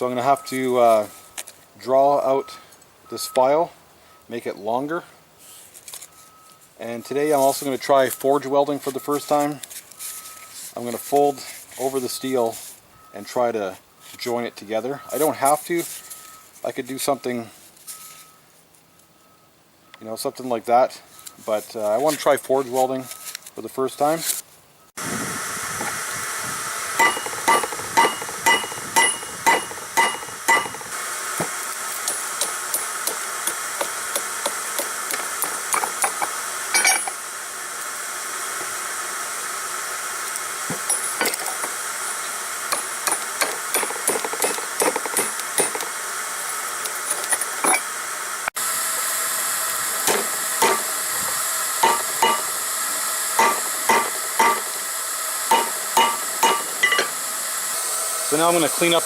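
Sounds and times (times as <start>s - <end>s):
steady hiss: 0.0s - 59.0s
hammer striking metal on anvil: 27.0s - 30.9s, 50.1s - 50.9s, 51.8s - 52.5s, 53.4s - 54.7s, 55.5s - 57.2s.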